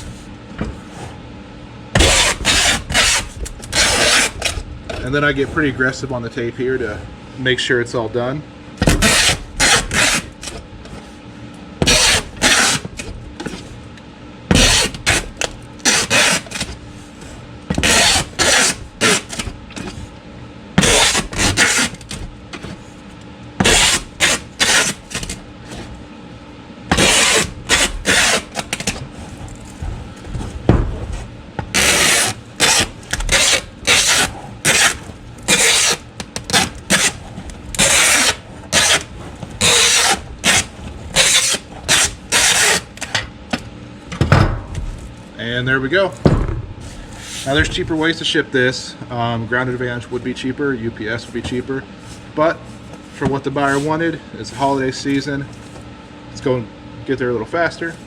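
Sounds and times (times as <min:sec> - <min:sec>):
packing tape rasping off roll: 0:02.0 - 0:05.1, 0:08.9 - 0:11.0, 0:11.8 - 0:13.8, 0:14.5 - 0:20.1, 0:20.8 - 0:23.0, 0:23.6 - 0:26.0, 0:26.9 - 0:43.2.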